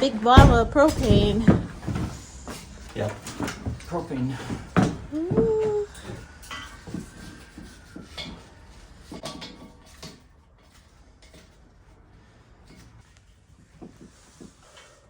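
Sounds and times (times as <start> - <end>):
hard objects knocking and clinking: 0.3 - 7.1.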